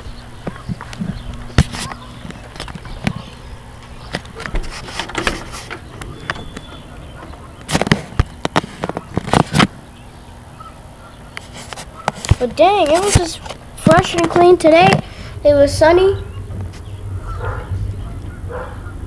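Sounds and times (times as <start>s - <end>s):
steady low hum: 0.0s - 19.0s
sharp clicks and knocks: 0.4s - 9.8s.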